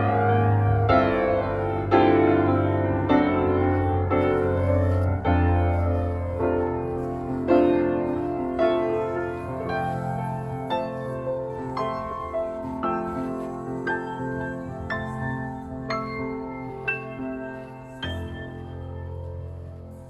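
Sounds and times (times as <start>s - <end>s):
slow piano notes: 0.0s - 20.0s.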